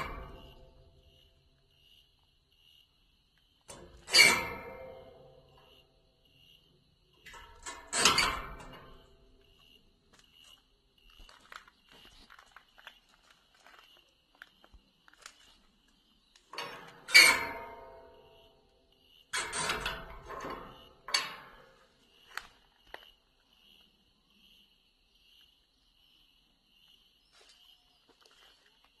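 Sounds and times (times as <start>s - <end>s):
metal gate latch clanking: 0.0s - 0.9s, 3.7s - 5.6s, 7.2s - 9.4s, 16.5s - 18.3s, 19.3s - 21.9s
latch scraping: 7.3s - 9.2s
rattling clatter: 7.3s - 9.3s, 19.3s - 21.8s.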